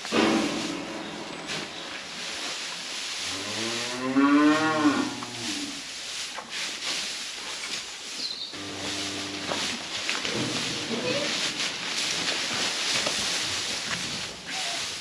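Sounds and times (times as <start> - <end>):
cattle mooing: 3.4 - 5.6, 8.6 - 9.6.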